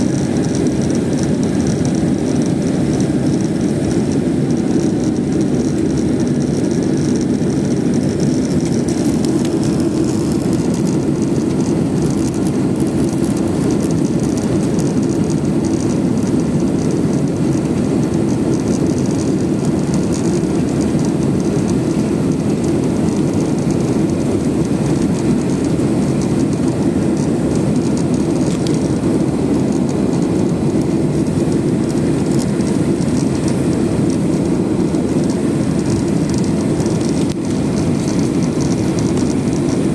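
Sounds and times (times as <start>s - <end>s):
rushing airflow: 0.0s - 16.1s
jet engine noise: 0.0s - 39.9s.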